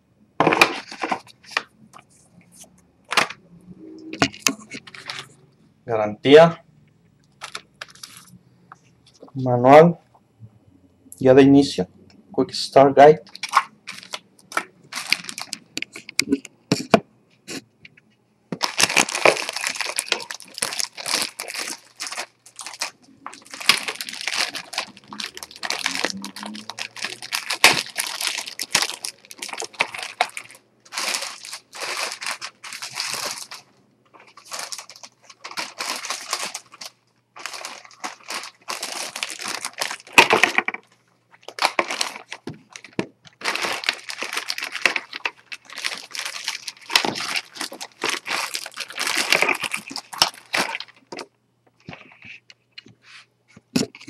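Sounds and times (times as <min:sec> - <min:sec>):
plastic packaging crinkling: 0:00.4 - 0:01.7, 0:04.1 - 0:05.4, 0:07.3 - 0:08.4, 0:13.3 - 0:17.0, 0:18.6 - 0:52.4.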